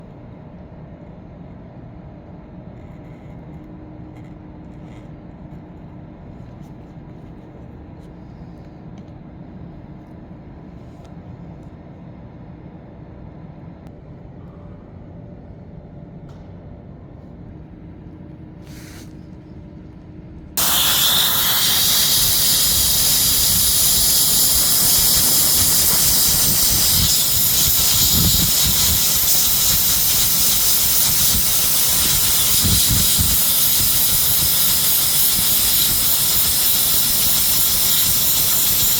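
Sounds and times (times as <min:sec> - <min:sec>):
hot-air gun blowing hiss: 0:20.6 - 0:38.9.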